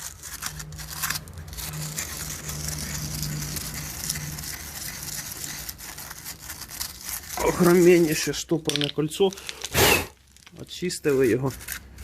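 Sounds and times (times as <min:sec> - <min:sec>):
wire brush scrubbing metal: 0:00.0 - 0:08.4.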